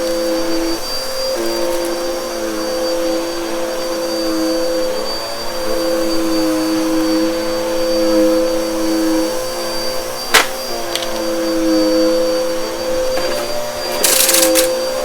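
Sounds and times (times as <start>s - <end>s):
vacuum cleaner motor whine: 0.0s - 15.0s.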